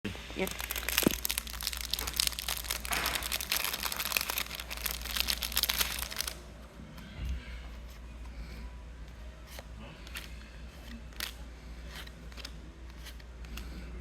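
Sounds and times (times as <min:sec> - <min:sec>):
wrapper crinkling and tearing: 0:00.4 - 0:06.4.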